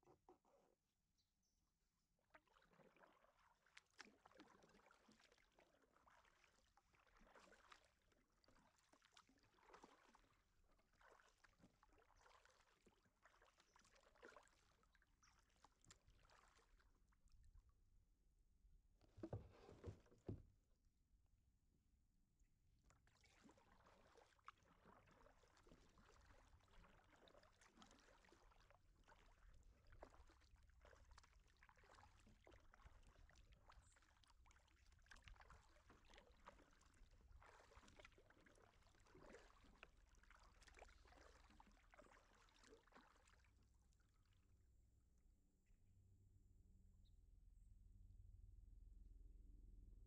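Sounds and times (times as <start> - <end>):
paddle swishing through water: 2.3 - 17.2, 19.0 - 20.5, 22.9 - 44.2.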